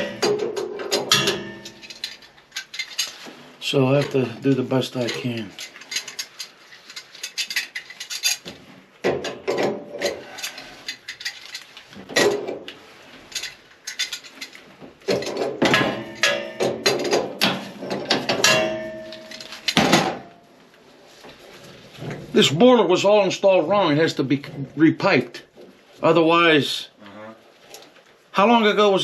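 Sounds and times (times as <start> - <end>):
metallic ringing: 0.0 - 2.1, 15.8 - 16.9, 18.4 - 20.5
hand tools clanking on metal: 0.0 - 12.6, 13.2 - 20.4.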